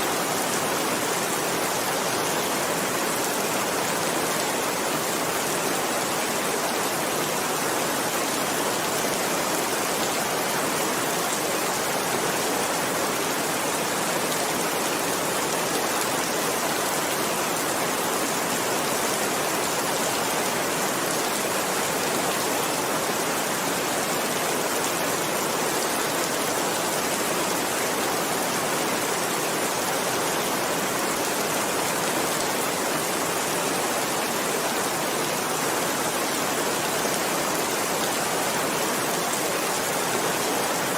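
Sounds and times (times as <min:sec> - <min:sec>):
steady rain hiss: 0:00.0 - 0:40.9.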